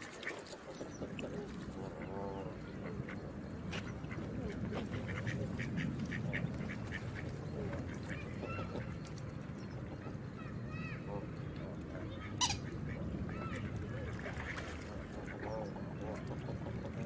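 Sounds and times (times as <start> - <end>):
rushing water: 0.0 - 2.6.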